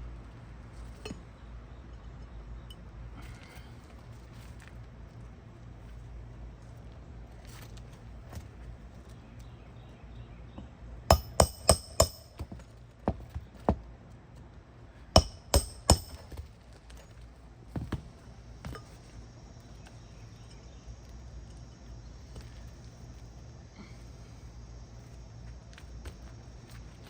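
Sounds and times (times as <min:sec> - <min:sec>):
hammer striking metal: 0:11.1 - 0:12.6, 0:15.2 - 0:16.4.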